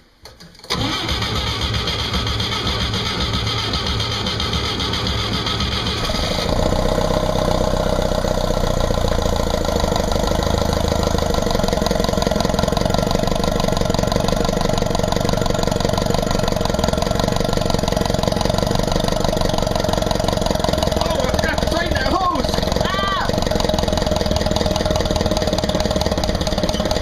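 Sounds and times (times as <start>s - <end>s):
inboard boat engine running: 1.8s - 27.0s.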